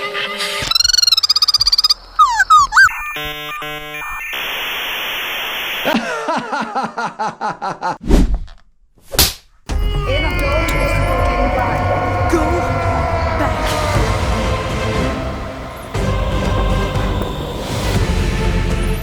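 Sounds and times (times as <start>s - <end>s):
falling electronic chirps: 0.6s - 5.9s
computer-like beeps: 0.7s - 4.6s.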